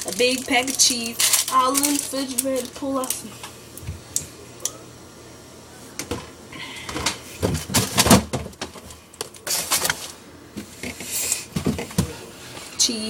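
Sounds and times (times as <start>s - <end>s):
containers clattering in refrigerator: 6.0s - 10.1s, 10.7s - 12.2s.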